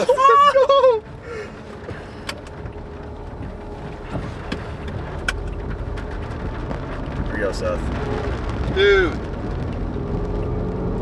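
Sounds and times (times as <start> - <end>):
car road and engine rumble: 0.0 - 11.0.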